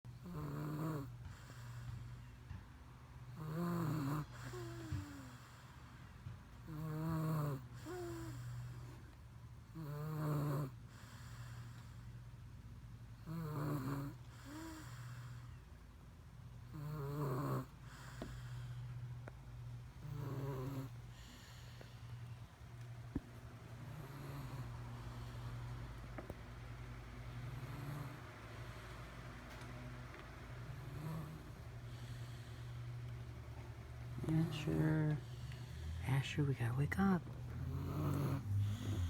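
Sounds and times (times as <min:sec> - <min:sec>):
loud rasping snores: 0:00.2 - 0:02.0, 0:03.3 - 0:05.7, 0:06.6 - 0:09.0, 0:09.7 - 0:11.8, 0:13.2 - 0:15.4, 0:16.7 - 0:18.7, 0:20.0 - 0:21.9, 0:23.8 - 0:25.7, 0:27.4 - 0:28.4, 0:30.8 - 0:32.7, 0:37.5 - 0:39.0
soft breath sound: 0:01.0 - 0:03.4, 0:04.1 - 0:06.7, 0:07.6 - 0:09.6, 0:10.7 - 0:13.2, 0:17.6 - 0:39.0.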